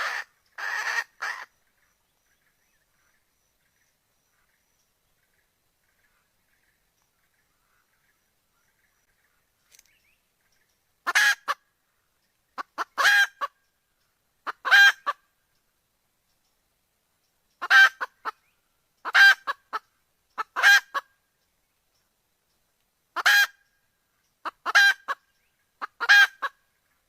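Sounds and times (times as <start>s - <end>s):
junglefowl hen calling: 0.0s - 9.2s, 10.5s - 11.9s, 12.5s - 15.4s, 17.6s - 21.3s, 23.1s - 27.0s.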